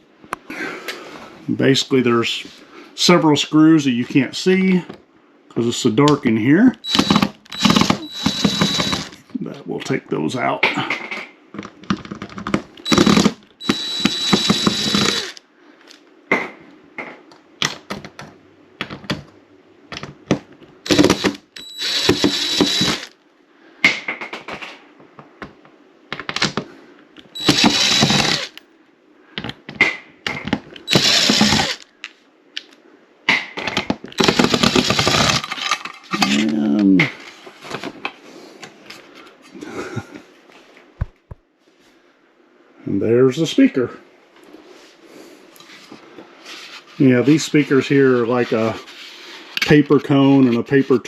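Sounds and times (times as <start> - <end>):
cordless drill whirring: 6.8 - 9.2, 12.8 - 15.4, 20.9 - 23.1, 27.4 - 28.6, 30.8 - 31.9, 34.2 - 35.4.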